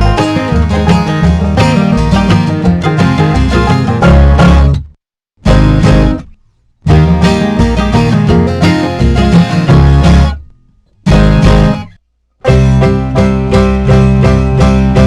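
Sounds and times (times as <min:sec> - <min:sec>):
guitar band music: 0:00.0 - 0:15.0.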